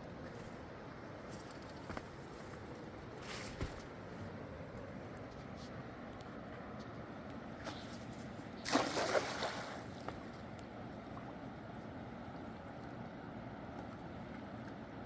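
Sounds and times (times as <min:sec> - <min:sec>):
water splash: 0:08.6 - 0:10.0.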